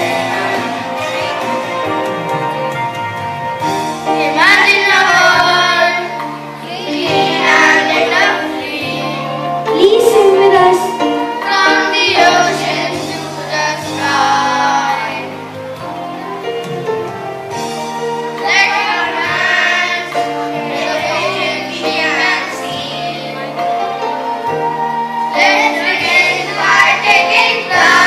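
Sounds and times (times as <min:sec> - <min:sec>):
children singing: 0:00.0 - 0:01.8, 0:04.2 - 0:15.3, 0:18.3 - 0:23.9, 0:25.3 - 0:28.0
instrumental accompaniment: 0:00.0 - 0:28.0.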